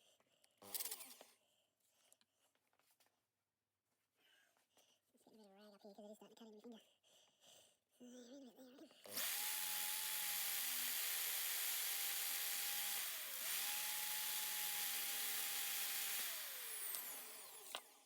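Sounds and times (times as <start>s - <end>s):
drill bit grinding: 9.1s - 18.0s
power drill whining: 9.1s - 18.0s.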